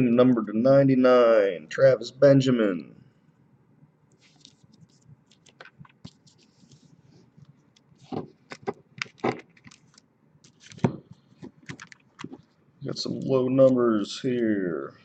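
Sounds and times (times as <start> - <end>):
trading cards being shuffled: 4.2 - 6.9, 7.7 - 13.8.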